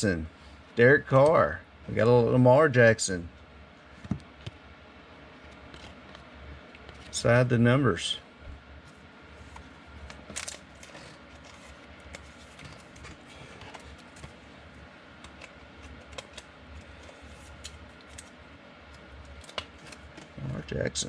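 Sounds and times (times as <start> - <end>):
low steady hum: 0.0 - 21.0
cards clicking and scraping: 5.5 - 7.1, 9.4 - 14.4, 15.2 - 20.4.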